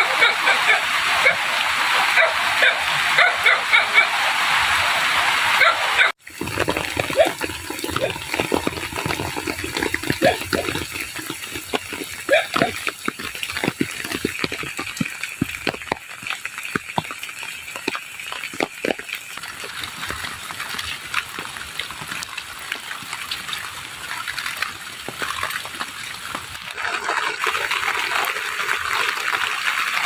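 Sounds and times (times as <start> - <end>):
heavy rain hissing: 0.0 - 17.9
raindrop impacts ticking: 6.2 - 29.6.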